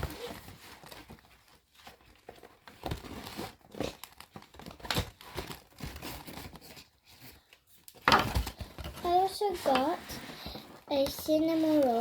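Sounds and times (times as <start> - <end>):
packaging crinkling and tearing: 0.0 - 7.0.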